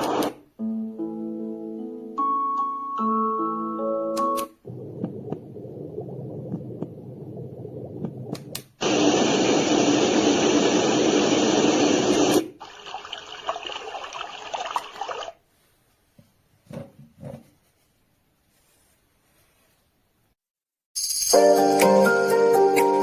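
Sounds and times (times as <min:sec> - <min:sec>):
water rushing from sound machine: 0:04.7 - 0:15.4
uneven water sound: 0:12.6 - 0:15.4.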